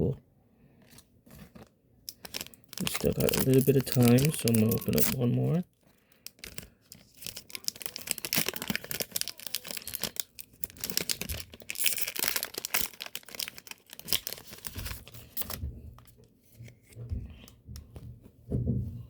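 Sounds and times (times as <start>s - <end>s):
wrapper tearing and crinkling: 1.3s - 16.2s.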